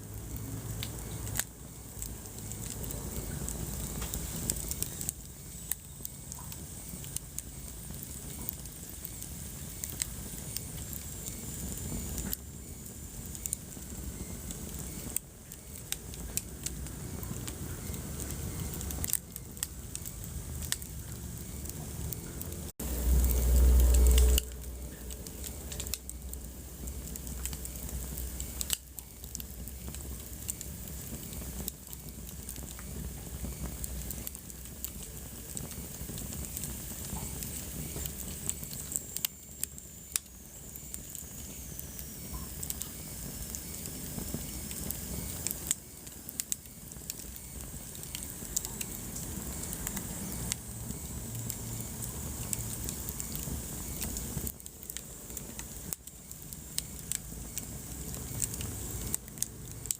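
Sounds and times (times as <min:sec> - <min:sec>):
wood fire crackling: 0:00.0 - 0:59.9
loud low rumble: 0:22.3 - 0:27.0.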